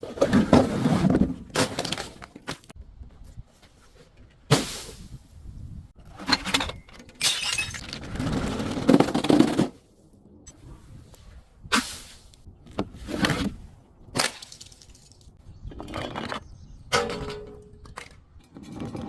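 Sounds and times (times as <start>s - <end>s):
glass bottles shattering: 6.6s - 8.0s
glass crunching: 7.2s - 8.0s.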